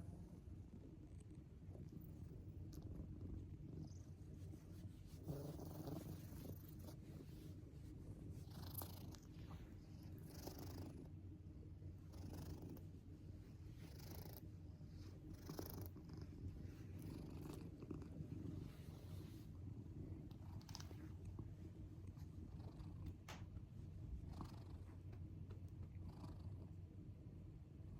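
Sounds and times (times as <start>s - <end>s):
cat snoring: 5.2s - 6.9s, 10.2s - 11.1s, 12.1s - 12.8s, 13.8s - 14.4s, 15.3s - 16.3s.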